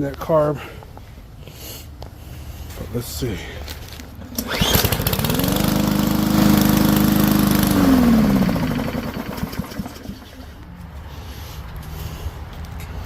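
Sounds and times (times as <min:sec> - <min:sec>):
lawn mower pull start: 0:04.0 - 0:10.6
lawn mower engine running: 0:04.2 - 0:10.6.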